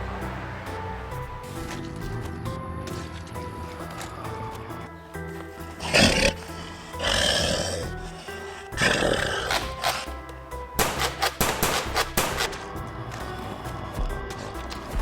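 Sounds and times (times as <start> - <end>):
background music: 0.0 - 15.0
growling roars: 5.8 - 10.1.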